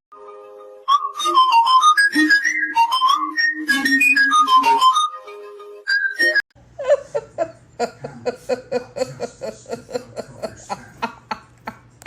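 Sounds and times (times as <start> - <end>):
pulsing laughter: 6.8 - 12.0.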